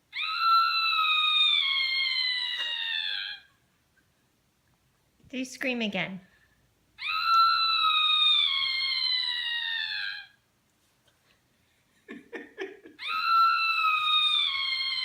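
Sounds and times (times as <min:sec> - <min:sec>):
high-pitched scream: 0:00.1 - 0:03.5, 0:07.0 - 0:10.4, 0:13.0 - 0:15.0.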